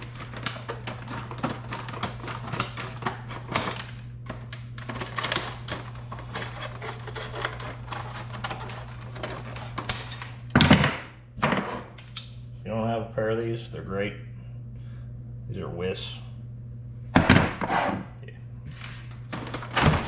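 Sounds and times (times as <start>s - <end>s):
packaging crunch: 0.0s - 10.1s
plastic and cardboard crackling: 0.0s - 10.4s, 19.0s - 20.0s
steady low hum: 0.0s - 20.0s.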